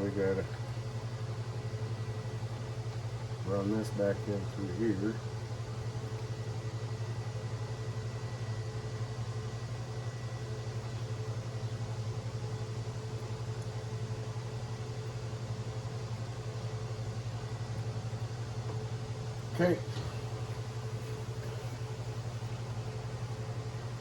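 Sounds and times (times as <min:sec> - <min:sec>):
pulsing mechanical hum: 0:00.0 - 0:24.0
faint high whine: 0:14.2 - 0:24.0.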